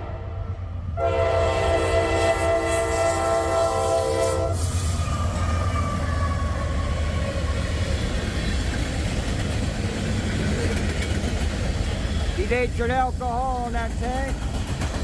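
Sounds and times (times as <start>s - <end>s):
train air horn: 0.0s - 7.3s
steel wheels rumbling on rail: 0.0s - 15.0s.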